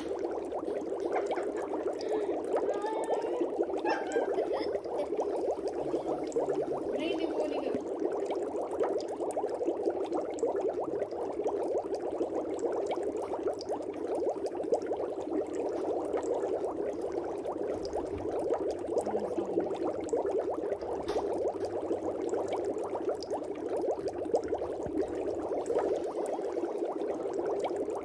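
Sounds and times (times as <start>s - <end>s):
dry ice fizzing: 0.0s - 8.1s.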